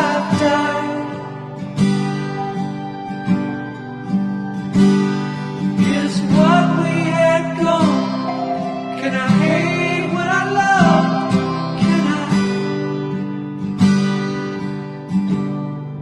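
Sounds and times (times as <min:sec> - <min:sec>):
acoustic guitar strumming: 0:00.0 - 0:16.0
person singing: 0:05.9 - 0:12.5.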